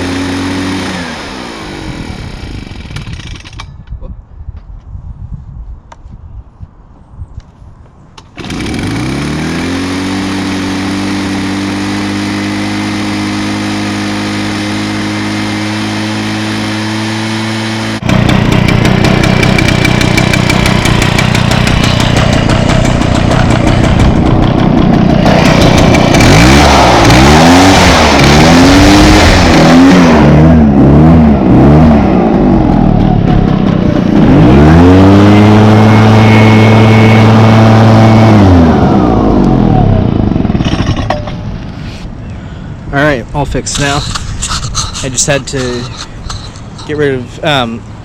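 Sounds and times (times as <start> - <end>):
leaf blower two-stroke engine: 0.0 - 3.7, 8.4 - 42.0, 43.4 - 48.0.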